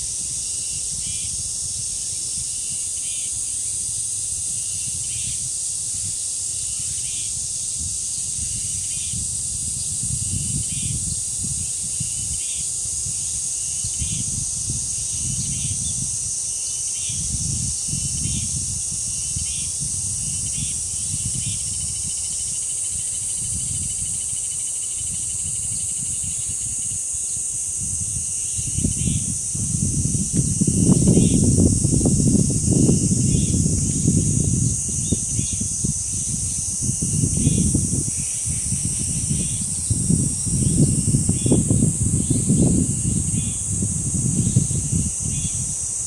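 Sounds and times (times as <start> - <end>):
cicadas droning: 0.0 - 46.0
wind on microphone: 0.0 - 46.0.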